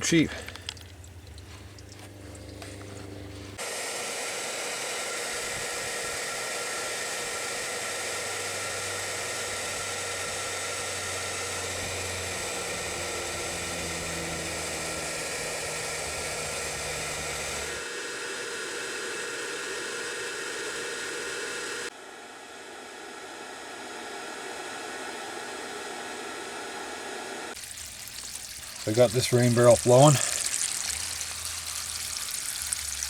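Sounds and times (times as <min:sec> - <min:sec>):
hair dryer blowing: 0:03.6 - 0:27.6.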